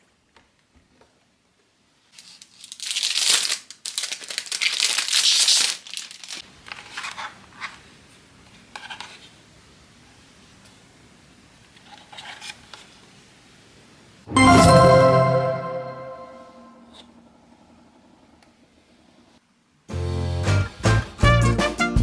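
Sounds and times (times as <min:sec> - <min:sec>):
packaging crinkling: 0:02.2 - 0:06.4.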